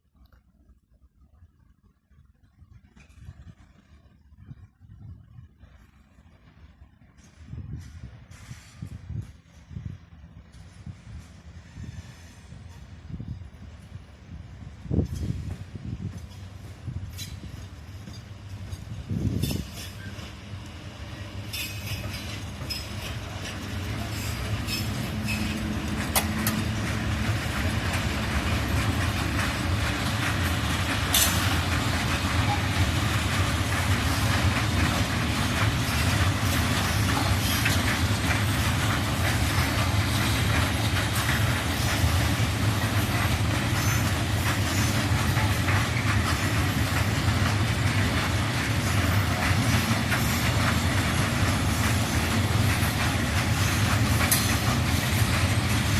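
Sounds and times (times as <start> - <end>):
freight train rumbling past: 1.6 - 55.9
wheels clattering over rail joints: 14.8 - 55.9.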